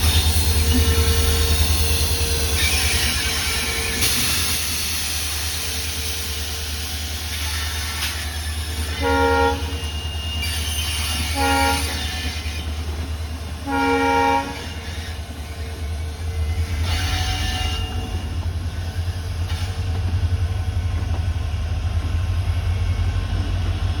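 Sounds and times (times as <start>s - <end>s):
diesel locomotive engine humming: 0.0s - 24.0s
locomotive horn blasts: 8.9s - 9.9s, 11.1s - 12.4s, 13.6s - 14.8s.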